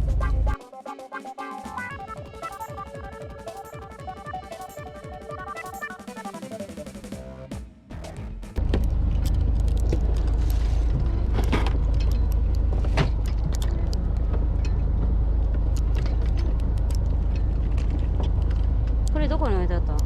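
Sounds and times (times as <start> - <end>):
boat engine rumbling: 0.0 - 0.6, 8.0 - 20.0
gear clicking and rattling: 8.6 - 20.0.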